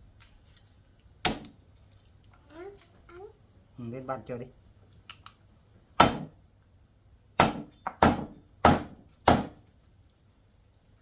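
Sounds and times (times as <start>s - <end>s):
sharp knocks on wood: 6.0s - 6.3s, 7.4s - 9.6s.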